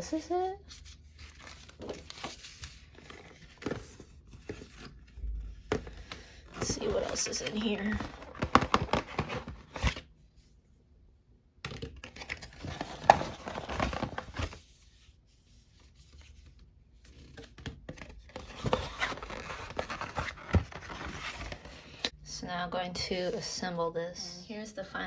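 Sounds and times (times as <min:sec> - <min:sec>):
packaging crinkling and tearing: 0:00.7 - 0:03.9, 0:06.6 - 0:10.0, 0:11.9 - 0:14.6, 0:18.0 - 0:22.1.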